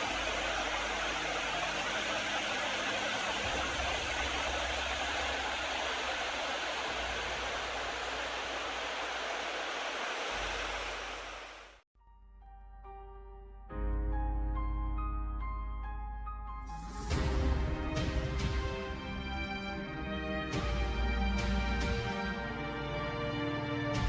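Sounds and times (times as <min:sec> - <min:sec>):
mountain stream rushing: 0:00.0 - 0:11.8
soft piano music: 0:12.0 - 0:23.8.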